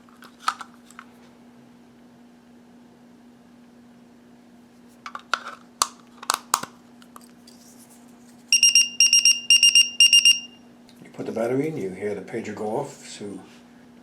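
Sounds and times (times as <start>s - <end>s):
pager high-pitched beeps: 8.5s - 10.6s.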